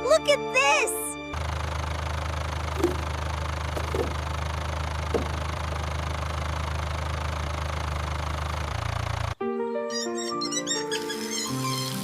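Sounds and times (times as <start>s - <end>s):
engine idling: 1.3s - 9.4s.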